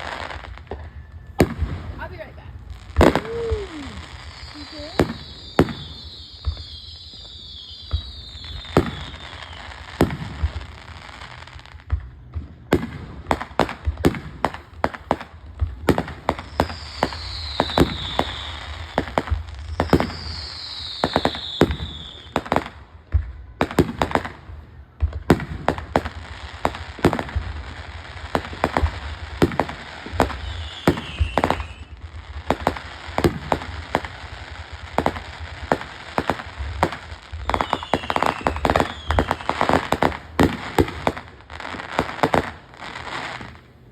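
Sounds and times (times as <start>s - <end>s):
falling firework whistles: 0.0s - 12.0s, 13.6s - 43.7s
fireworks bangs and crackles: 0.0s - 43.9s.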